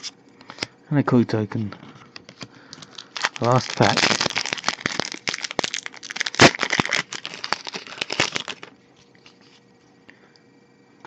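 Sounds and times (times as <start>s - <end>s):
foil wrapper crinkling: 2.2s - 9.6s
foil tearing: 2.8s - 9.4s.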